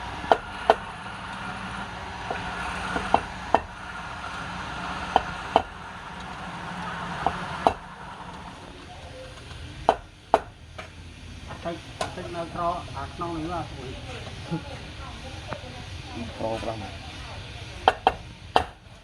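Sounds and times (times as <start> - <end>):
steady motor hum: 0.0 - 19.0
sharp wooden knocks: 17.9 - 18.8.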